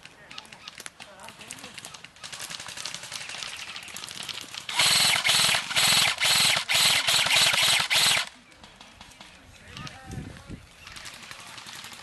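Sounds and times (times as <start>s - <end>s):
airsoft rifle firing bursts: 2.2s - 9.3s.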